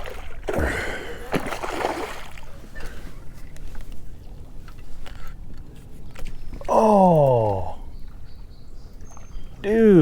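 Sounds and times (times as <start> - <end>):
water splashing and trickling: 0.0 - 3.2.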